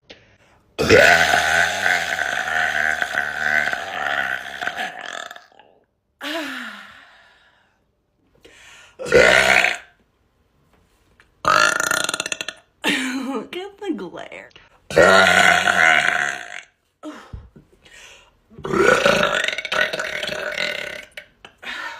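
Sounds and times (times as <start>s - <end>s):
woman burping loudly: 0.8s - 5.9s, 9.0s - 10.0s, 11.4s - 13.2s, 14.9s - 16.8s, 18.6s - 21.6s.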